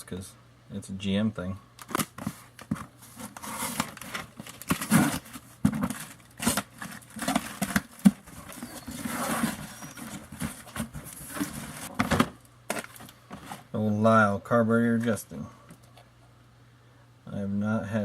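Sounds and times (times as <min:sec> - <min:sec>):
packaging rustling: 0:01.8 - 0:13.7
boxes knocking and clicking: 0:03.7 - 0:13.6.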